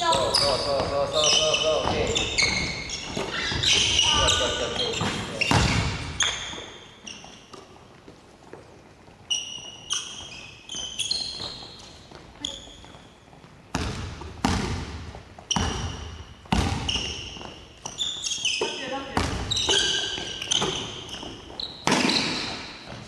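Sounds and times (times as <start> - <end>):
shoes squeaking on floor: 0.0 - 23.0
basketball bouncing: 1.8 - 6.7, 13.7 - 17.5, 19.1 - 23.0.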